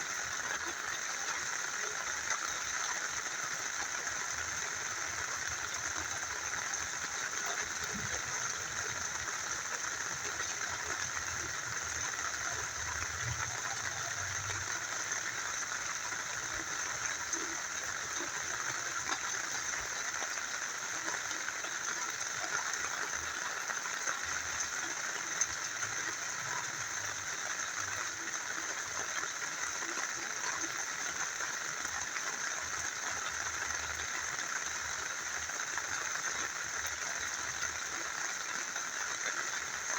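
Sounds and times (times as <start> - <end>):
rain falling: 0.0 - 39.9
small river flowing: 0.0 - 39.9.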